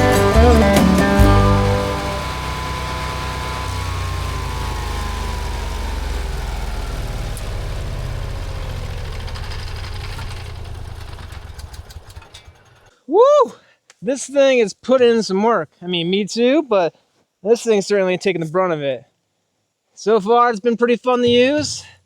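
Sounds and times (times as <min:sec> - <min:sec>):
whine falling in pitch: 0:00.0 - 0:11.2
wood chipper engine running: 0:00.0 - 0:12.9.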